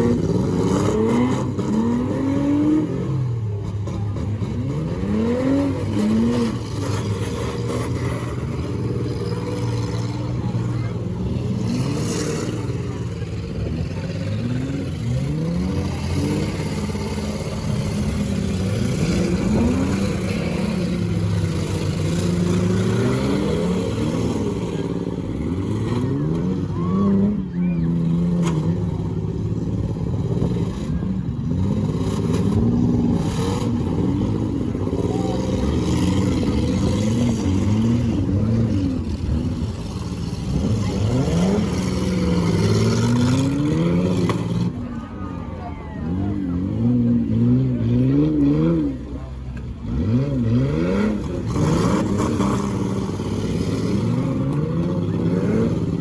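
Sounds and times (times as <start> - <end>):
car engines revving: 0.0 - 56.0.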